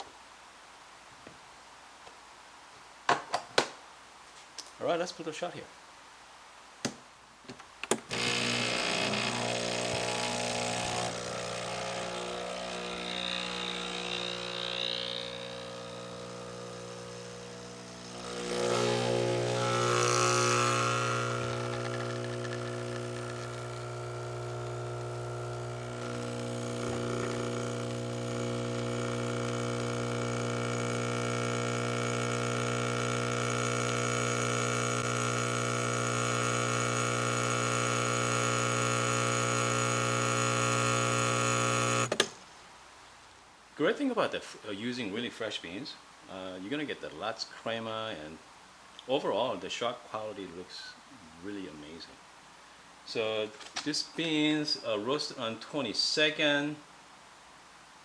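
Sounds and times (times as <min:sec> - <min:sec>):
espresso pump humming: 0:08.1 - 0:42.2.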